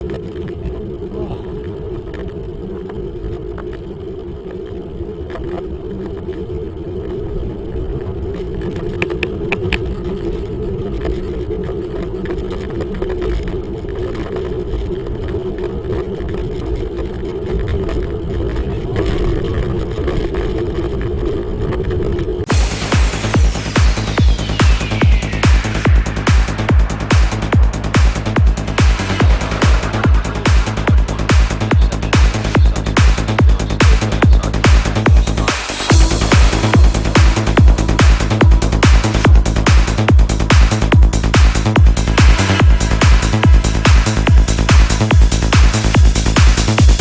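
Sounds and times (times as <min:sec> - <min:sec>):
wind and road noise rumble: 0:00.0 - 0:47.0
sharp clicks: 0:08.6 - 0:09.9.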